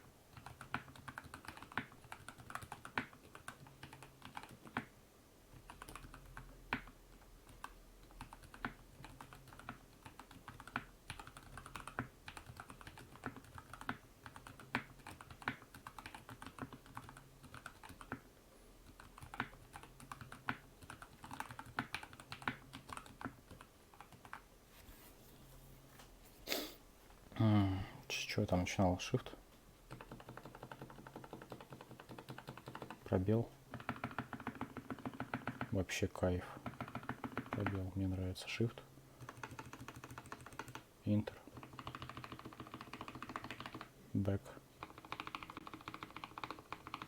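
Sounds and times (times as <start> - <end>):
mechanical keyboard typing: 0.3 - 4.9, 5.5 - 24.4, 29.9 - 35.8, 36.6 - 37.9, 39.2 - 40.9, 41.5 - 43.9, 44.8 - 47.0.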